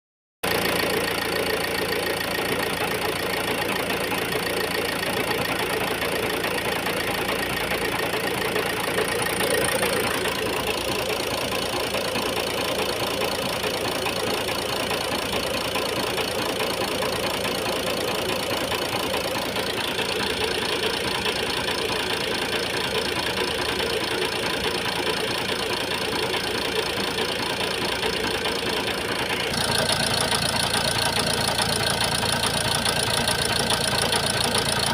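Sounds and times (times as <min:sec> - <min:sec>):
diesel engine idling with knocking: 0:00.4 - 0:34.9.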